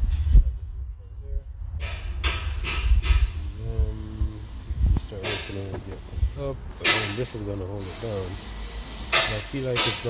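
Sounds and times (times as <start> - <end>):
microphone handling rumble: 0.0 - 6.9.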